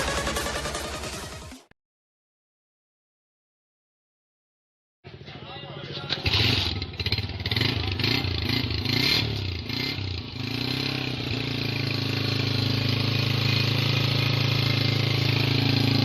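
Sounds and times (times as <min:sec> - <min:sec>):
motorcycle engine running: 0:00.0 - 0:01.7, 0:06.1 - 0:16.0.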